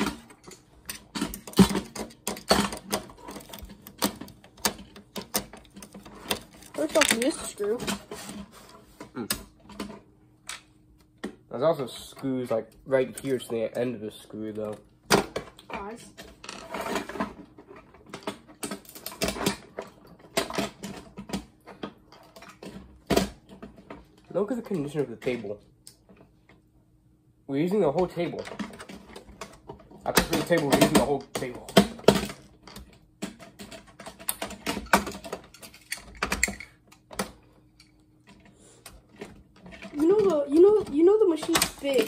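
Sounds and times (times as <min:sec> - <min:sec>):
plastic and metal parts clicking: 0:00.0 - 0:08.0
tools and plastic parts clicking: 0:00.0 - 0:08.5, 0:14.6 - 0:24.2, 0:28.3 - 0:42.0.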